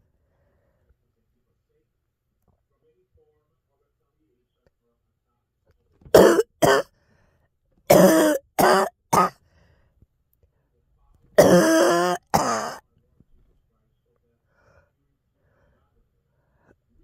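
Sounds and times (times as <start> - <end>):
girl coughing: 6.2 - 6.9, 7.9 - 9.4, 11.4 - 12.8.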